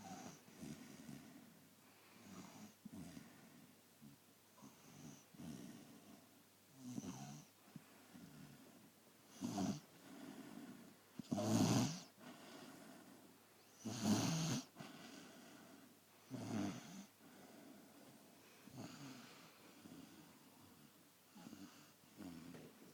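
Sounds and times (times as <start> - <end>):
small pet snoring: 0.0 - 1.5, 2.2 - 7.5, 9.3 - 13.0, 13.7 - 17.7, 18.7 - 20.7, 21.3 - 22.7.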